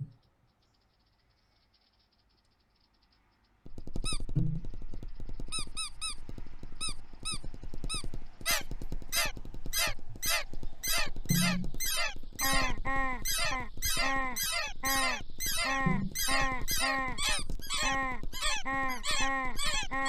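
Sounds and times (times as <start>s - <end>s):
fast dense clicking patter: 3.6s - 19.8s
cartoon birds chirping and squawking: 6.8s - 20.0s.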